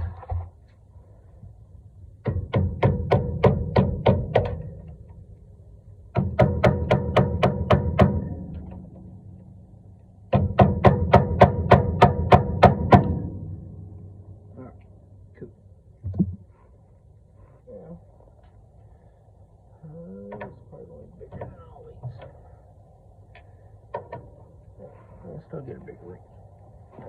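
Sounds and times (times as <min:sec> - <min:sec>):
hammer blows on metal: 0:06.1 - 0:09.4.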